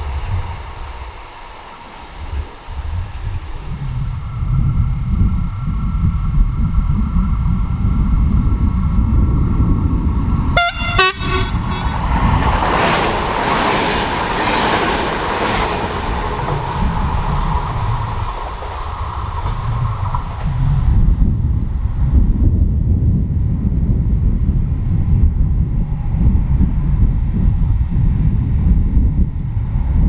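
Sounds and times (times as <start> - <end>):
train wheel and rail noise: 0.0 - 30.0
wind rumbling on microphone: 0.0 - 30.0
train horn toot: 10.5 - 13.2.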